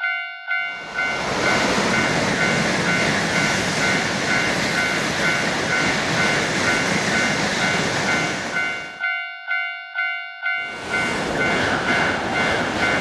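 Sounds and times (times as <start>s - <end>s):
crossing warning bell: 0.0s - 13.0s
train rushing over track: 0.5s - 9.1s, 10.6s - 13.0s.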